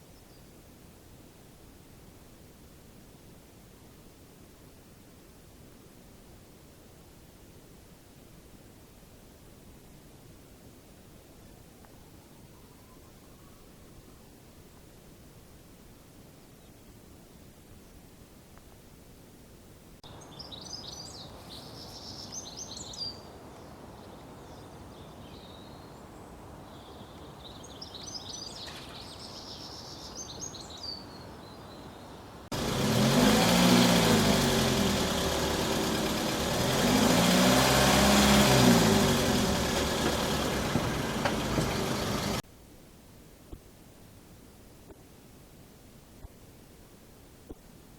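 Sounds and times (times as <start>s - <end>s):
small birds chirping: 20.0s - 32.6s
car driving past: 32.5s - 42.4s.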